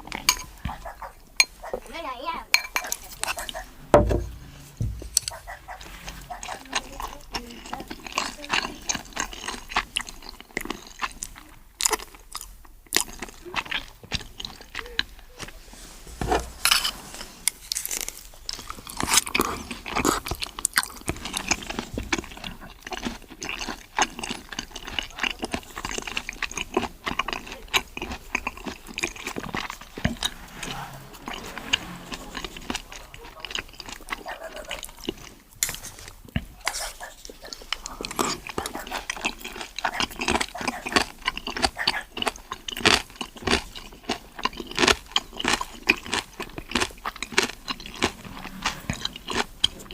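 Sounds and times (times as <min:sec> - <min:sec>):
person chewing and crunching: 0:05.1 - 0:15.2, 0:17.5 - 0:30.2, 0:31.7 - 0:49.9.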